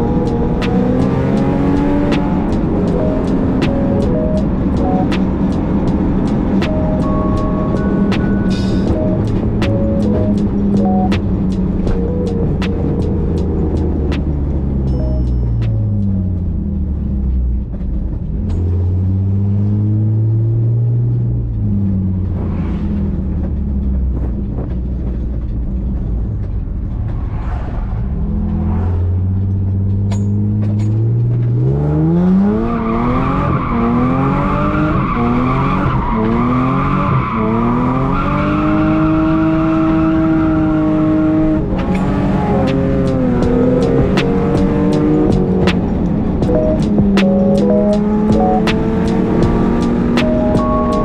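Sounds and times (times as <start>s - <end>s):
car engine revving through gears: 0.0s - 51.0s.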